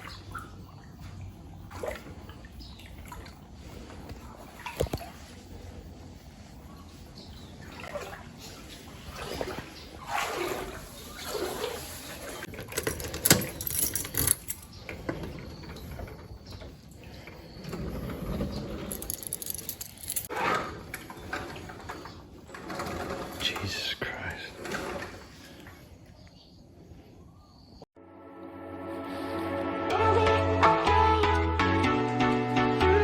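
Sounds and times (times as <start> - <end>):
water sloshing and splashing: 0.0 - 23.6, 24.5 - 26.4.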